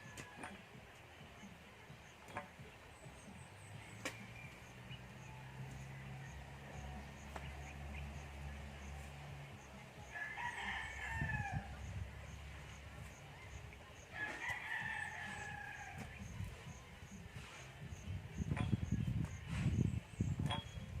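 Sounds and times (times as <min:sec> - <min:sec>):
rooster crowing: 0:10.1 - 0:11.9, 0:14.1 - 0:16.3.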